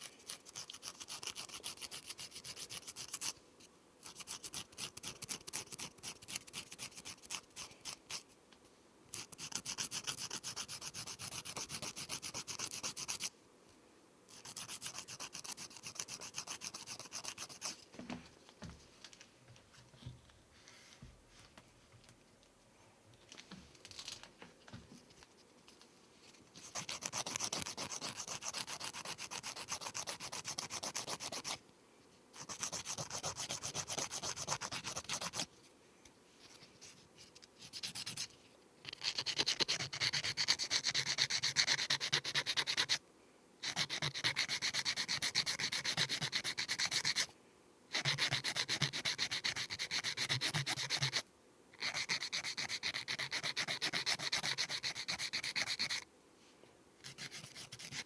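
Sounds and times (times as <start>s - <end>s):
nail file rasping on fingernails: 0.0s - 3.4s, 4.0s - 8.3s, 9.1s - 13.3s, 14.3s - 17.8s, 26.6s - 31.6s, 32.4s - 35.5s, 37.6s - 43.0s, 43.6s - 47.3s, 47.9s - 51.2s, 51.8s - 56.0s, 57.0s - 58.0s.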